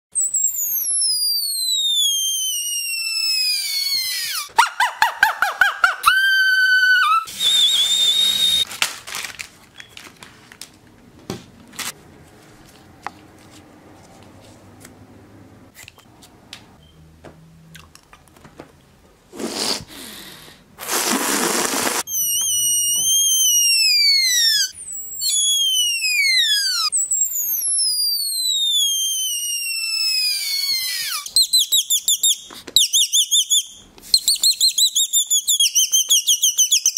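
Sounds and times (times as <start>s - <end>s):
shrill descending whistles: 0.1s - 4.8s, 5.5s - 8.7s, 22.1s - 36.9s
bursts of hissing noise: 19.4s - 23.1s.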